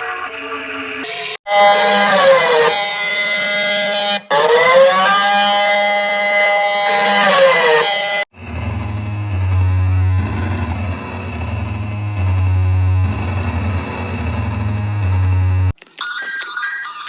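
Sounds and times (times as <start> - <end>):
buzzy siren-like alarm tone: 1.0 - 8.3.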